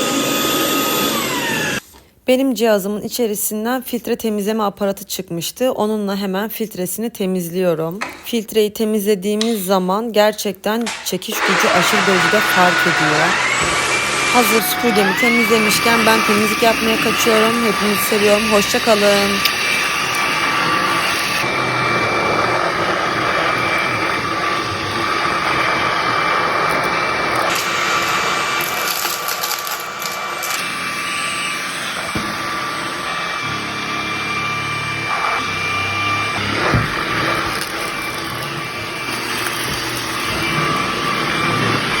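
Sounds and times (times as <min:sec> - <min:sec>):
stick vacuum running: 0:00.0 - 0:01.8, 0:10.9 - 0:42.0.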